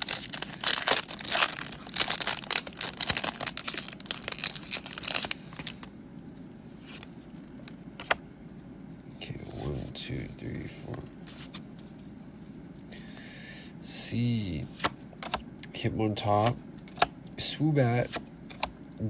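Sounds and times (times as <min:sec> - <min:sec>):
foil wrapper crinkling and tearing: 0:00.0 - 0:05.9.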